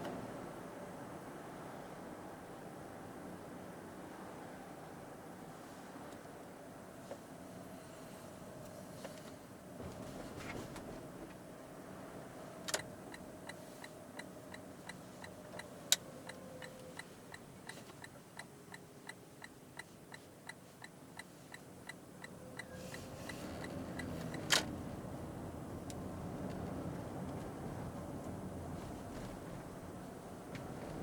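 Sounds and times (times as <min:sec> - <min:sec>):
turn signal ticking: 0:12.6 - 0:31.0.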